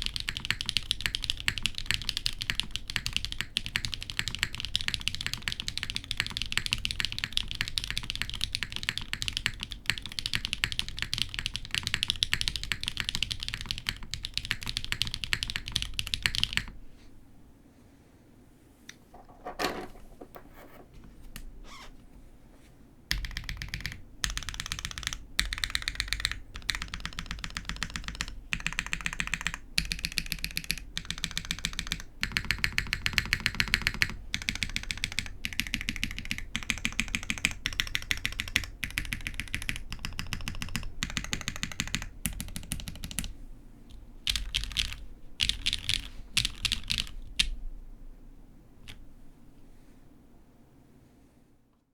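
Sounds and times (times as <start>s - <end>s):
rapid keyboard keystrokes: 0.0s - 16.8s, 23.1s - 43.4s, 44.2s - 47.6s.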